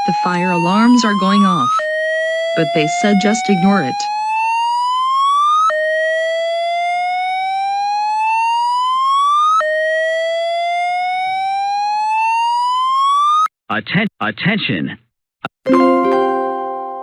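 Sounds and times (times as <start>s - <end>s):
fire alarm whooping: 0.0s - 13.4s.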